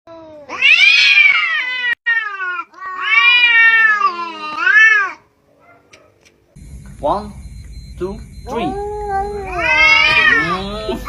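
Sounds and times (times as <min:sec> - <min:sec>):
cat yowling: 0:00.4 - 0:05.3, 0:08.5 - 0:10.9.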